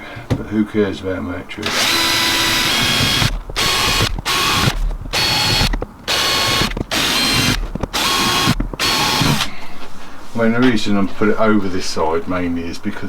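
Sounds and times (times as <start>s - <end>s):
electric drill drilling fibreglass: 1.6s - 9.5s.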